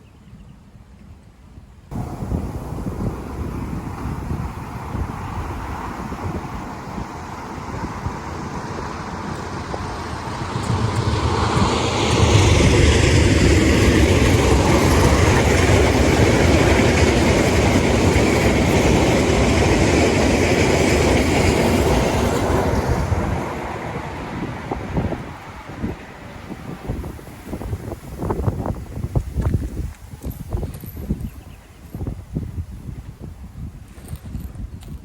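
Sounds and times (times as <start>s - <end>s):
train wheels rumbling on rails: 1.9s - 35.0s.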